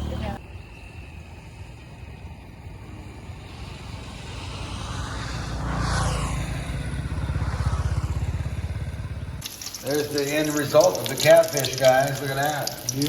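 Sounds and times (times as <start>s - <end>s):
vehicle engine passing by: 2.7s - 12.8s.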